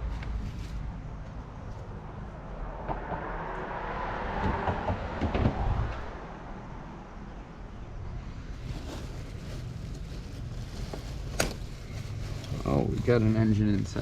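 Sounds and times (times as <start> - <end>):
low background rumble: 0.0 - 14.0
plastic bag rustling and crinkling: 8.3 - 14.0.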